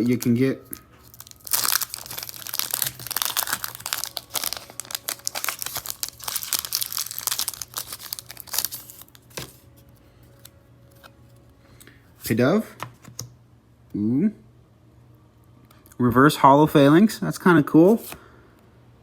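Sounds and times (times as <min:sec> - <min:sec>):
foil wrapper tearing and crinkling: 0:00.0 - 0:09.6.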